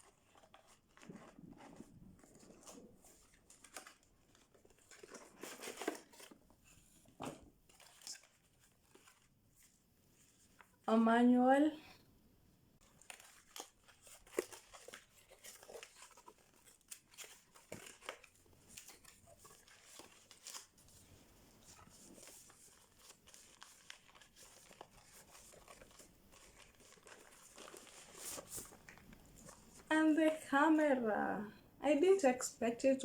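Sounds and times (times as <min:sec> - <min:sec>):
packaging rustling and tearing: 0:00.0 - 0:09.7, 0:12.8 - 0:29.9.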